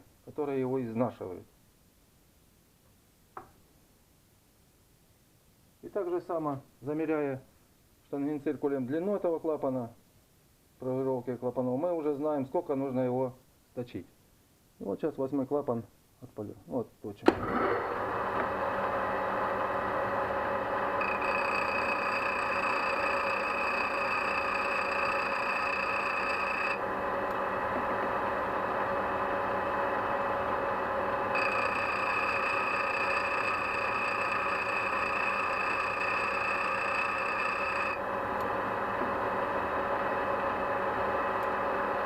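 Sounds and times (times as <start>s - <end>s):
bench grinder motor hum: 17.3s - 42.0s
grinding wheel whine on metal: 17.4s - 42.0s.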